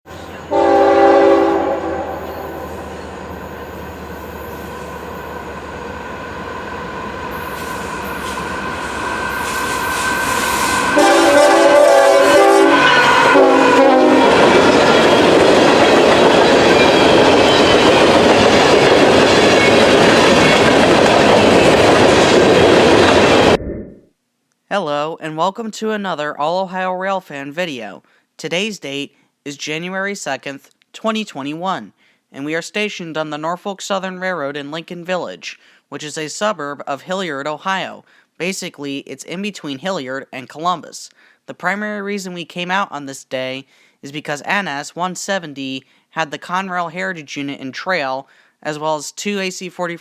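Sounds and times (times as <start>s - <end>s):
train passing with rumble: 0.1s - 23.6s
train horn: 0.5s - 3.0s, 7.8s - 14.7s.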